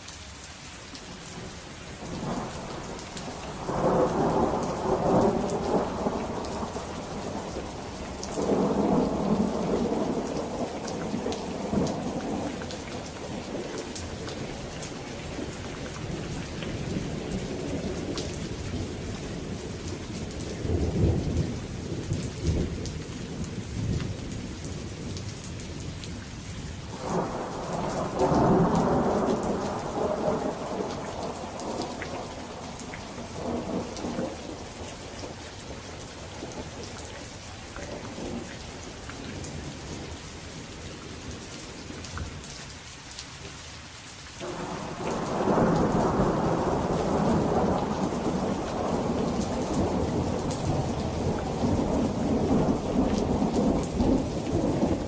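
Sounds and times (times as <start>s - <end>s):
steady rain falling: 0.0s - 55.0s
thunder rumbling: 2.0s - 25.2s, 26.8s - 36.9s, 44.4s - 55.0s.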